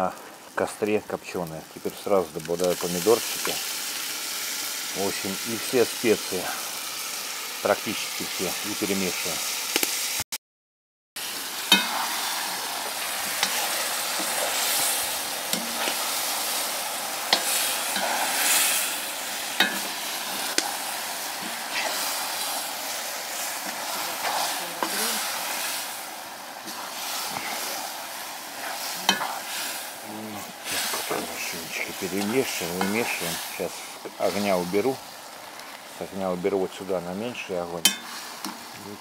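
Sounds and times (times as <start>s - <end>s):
vegetables sizzling in oil: 0.0s - 10.2s, 11.2s - 39.0s
utensil scraping a pot: 11.7s - 12.2s, 17.3s - 18.9s, 26.6s - 27.8s, 28.5s - 29.8s.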